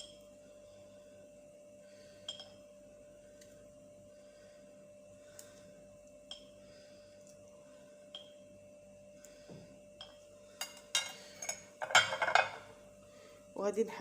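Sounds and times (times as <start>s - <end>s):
faint steady hum: 0.0s - 14.0s
kitchenware clinking against glass: 10.6s - 12.6s.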